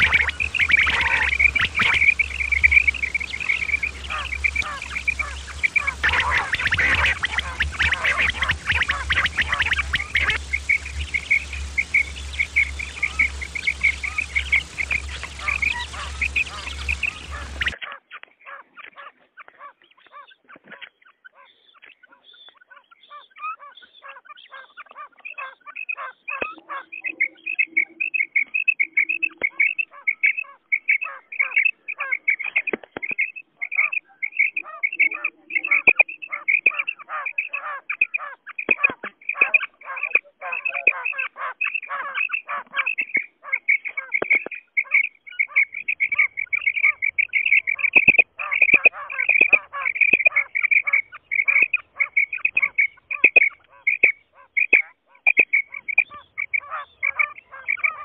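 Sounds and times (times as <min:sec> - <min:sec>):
low steady hum: 0:00.0 - 0:17.8
quail calling: 0:00.0 - 0:20.3, 0:22.7 - 0:58.0.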